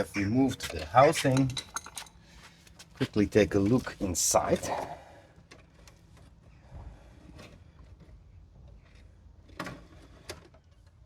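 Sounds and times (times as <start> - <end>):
faint handling noises: 0.2 - 9.1.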